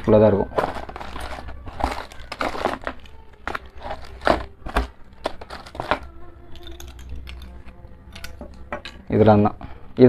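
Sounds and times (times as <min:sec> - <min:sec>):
plastic packaging crinkling: 0:00.0 - 0:06.1.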